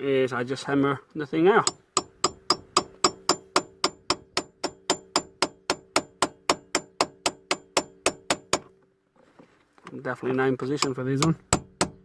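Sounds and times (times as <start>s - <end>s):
hammer tapping on metal bolt: 1.6s - 8.7s, 10.8s - 12.0s.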